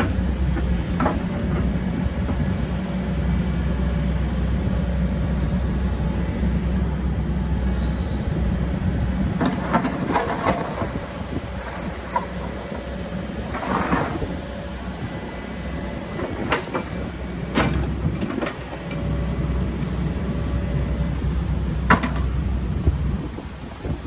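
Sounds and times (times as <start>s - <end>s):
diesel engine rumbling: 0.0s - 24.0s.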